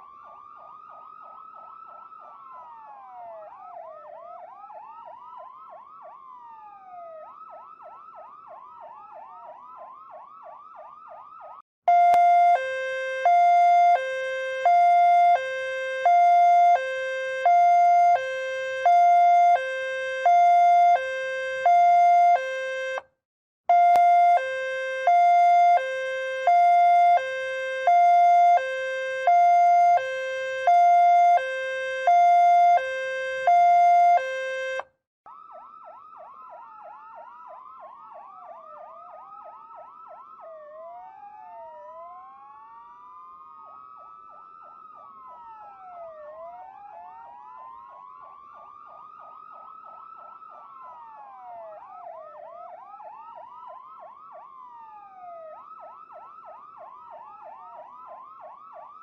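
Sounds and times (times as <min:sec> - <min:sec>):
yelping and wailing sirens: 0:00.0 - 0:23.0, 0:23.7 - 0:59.0
two-tone siren: 0:00.0 - 0:59.0.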